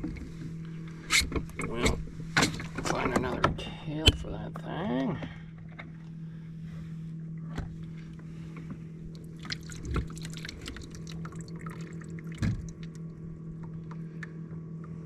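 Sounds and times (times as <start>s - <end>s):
steady low hum: 0.0s - 15.0s
water dripping and lapping: 9.1s - 14.3s.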